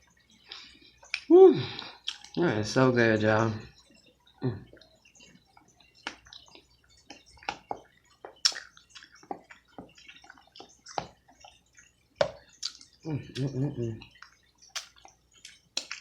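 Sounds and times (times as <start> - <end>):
wet lip smacks and sucking: 2.0 - 2.4, 8.2 - 11.9, 12.6 - 12.9, 14.2 - 16.0.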